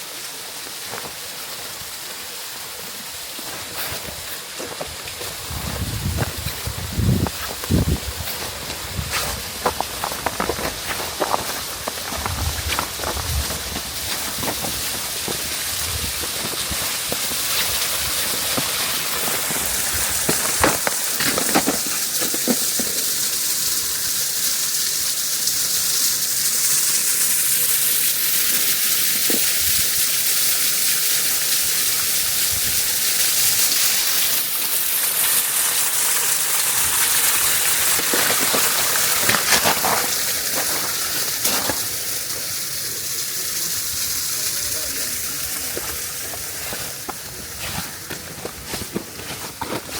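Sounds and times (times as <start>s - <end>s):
waterfall rushing and hissing: 0.0s - 49.9s.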